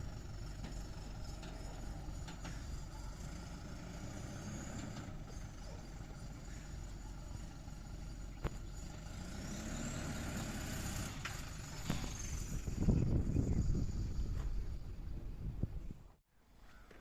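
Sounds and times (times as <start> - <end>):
engine idling: 0.0 - 9.5.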